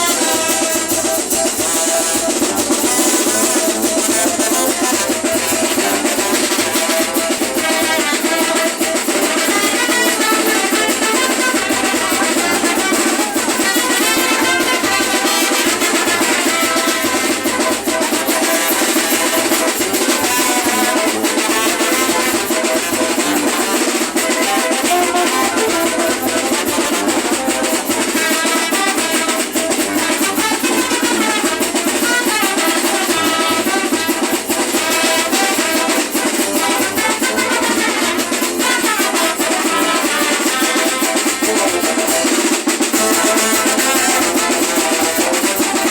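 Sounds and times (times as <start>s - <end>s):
drums steady beat: 0.0s - 45.9s
street band playing: 0.0s - 45.9s.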